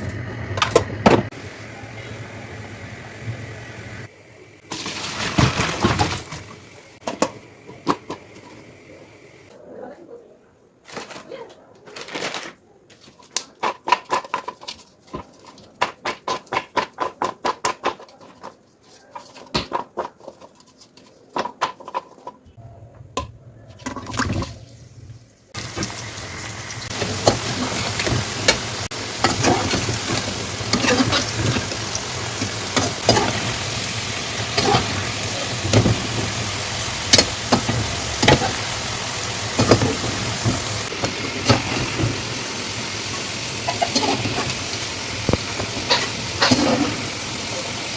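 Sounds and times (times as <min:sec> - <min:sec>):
stirring scrapes and knocks: 0:13.0 - 0:22.4, 0:26.9 - 0:33.8, 0:45.3 - 0:47.1
food sizzling in a pan: 0:25.5 - 0:47.9.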